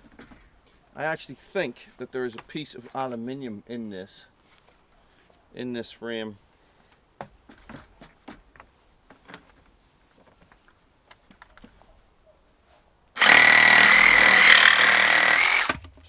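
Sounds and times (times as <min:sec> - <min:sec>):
reciprocating saw cutting plastic: 0:13.2 - 0:15.8.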